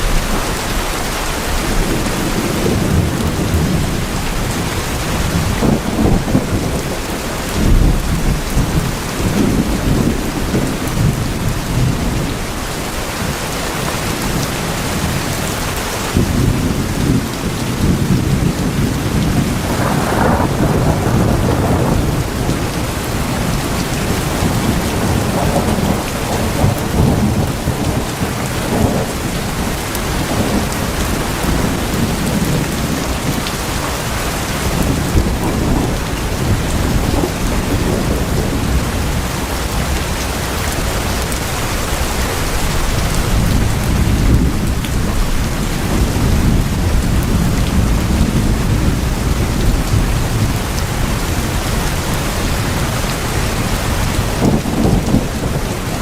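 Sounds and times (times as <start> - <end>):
rolling thunder: 0.0 - 12.7, 14.0 - 56.0
heavy rain on tin roofs: 0.0 - 56.0.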